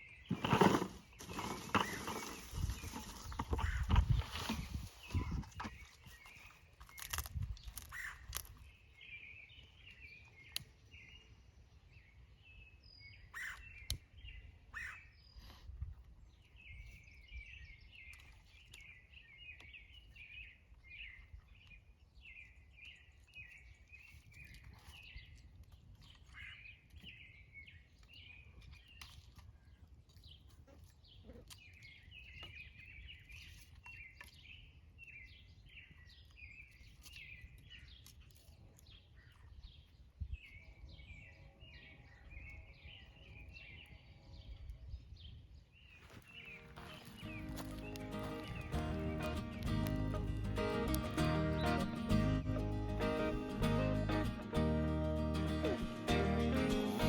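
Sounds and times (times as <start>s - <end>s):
small birds chirping: 0.0s - 57.0s.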